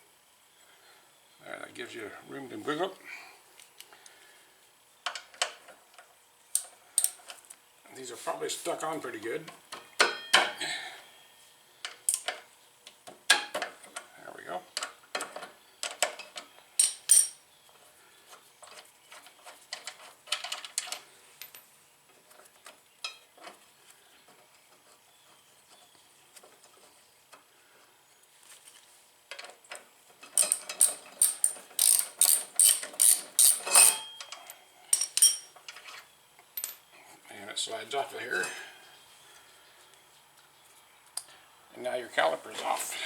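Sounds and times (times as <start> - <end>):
socket ratchet clicking: 30.4 - 33.9.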